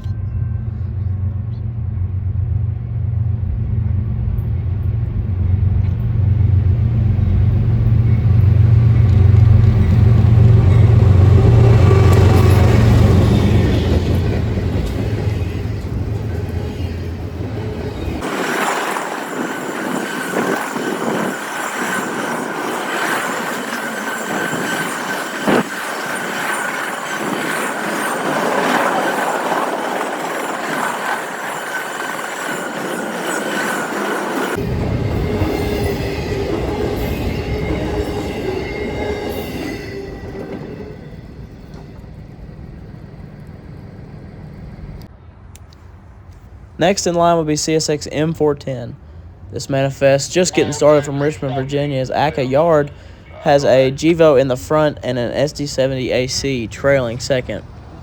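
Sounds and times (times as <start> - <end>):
deep train rumble: 0.0 - 58.0
train wheels squealing on rails: 4.3 - 42.8, 50.3 - 58.0
wheels clickety-clack over joints: 8.4 - 16.7, 17.4 - 34.6.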